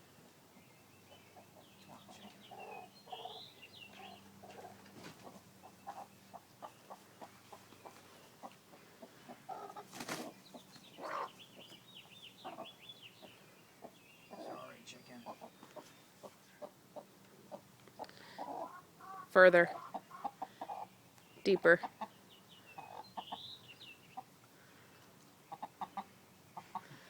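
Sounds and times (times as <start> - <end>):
hen clucking and chirping: 0.2 - 27.0
wing flurry: 9.6 - 11.3.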